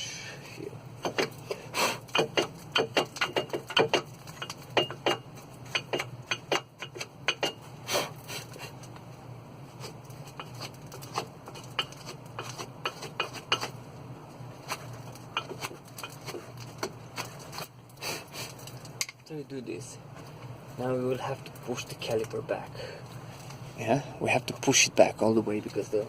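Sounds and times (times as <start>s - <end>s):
brush scraping brake caliper: 9.7s - 13.8s.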